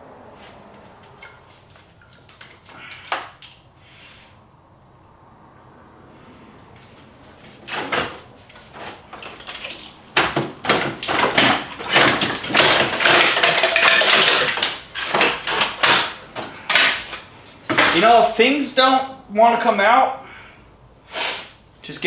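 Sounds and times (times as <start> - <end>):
knocking and rattling of car parts: 0.0 - 3.8, 6.1 - 19.2.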